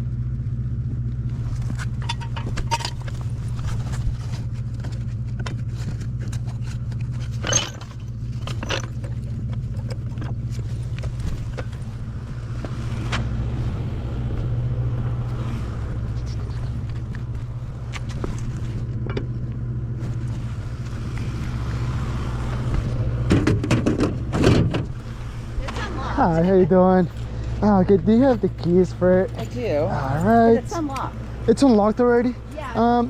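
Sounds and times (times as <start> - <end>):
vehicle engine humming: 0.0 - 33.0.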